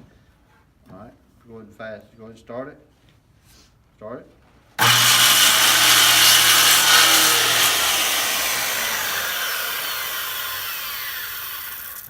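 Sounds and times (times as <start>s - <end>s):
circular saw cutting wood: 4.8s - 12.0s.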